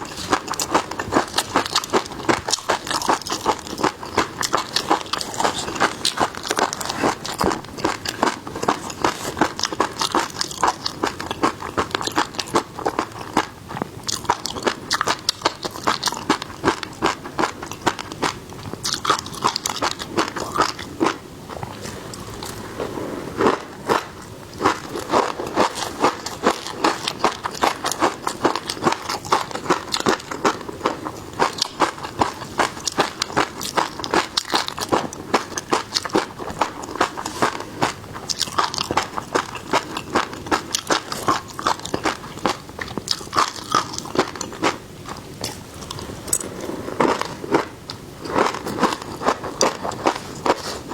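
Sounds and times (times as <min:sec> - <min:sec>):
crunchy bites and chewing: 0:00.0 - 0:22.6, 0:23.4 - 0:50.9.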